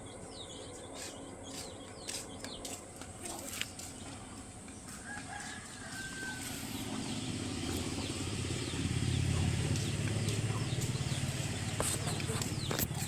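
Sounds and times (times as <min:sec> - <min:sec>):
small engine rumble: 0:00.0 - 0:13.0
distant rooster crowing: 0:04.8 - 0:11.2.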